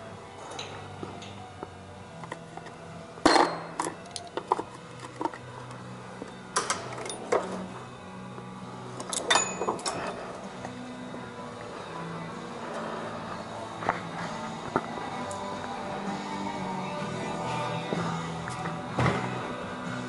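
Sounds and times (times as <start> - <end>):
faint radio music: 0.0 - 20.0
socket wrench clinking: 9.0 - 10.1.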